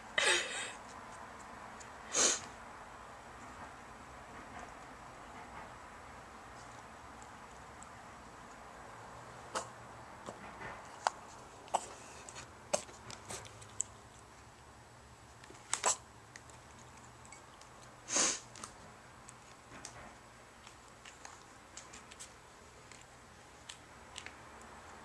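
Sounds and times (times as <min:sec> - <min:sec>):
pet sneezing: 0:09.5 - 0:09.7, 0:18.0 - 0:18.5.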